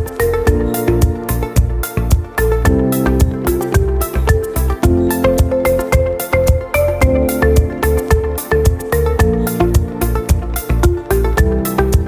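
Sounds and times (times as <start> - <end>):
plucked synth notes: 0.0 - 12.0
pulsing bass: 0.0 - 12.0.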